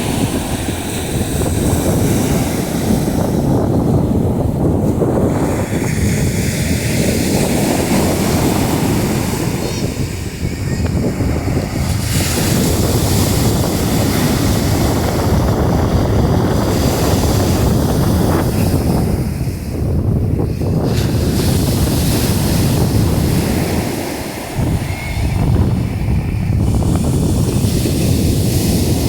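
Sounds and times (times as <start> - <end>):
sea surf washing on shore: 0.0 - 29.0
wind rumbling on microphone: 0.0 - 29.0.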